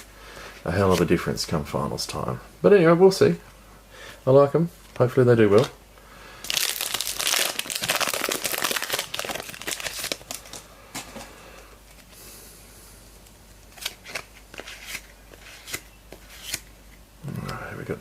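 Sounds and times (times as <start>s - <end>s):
foil wrapper crinkling and tearing: 6.5s - 10.6s.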